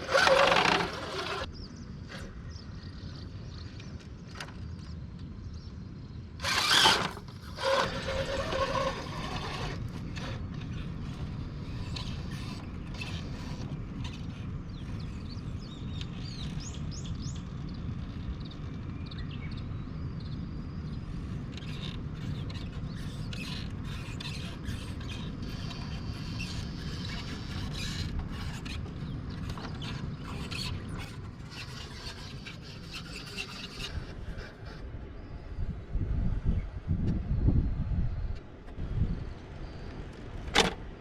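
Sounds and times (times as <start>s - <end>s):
clicks and scrapes: 0.0s - 1.5s, 6.4s - 14.5s, 21.5s - 34.8s
toy car motor whirring: 0.0s - 1.5s, 6.4s - 14.4s, 23.0s - 34.8s.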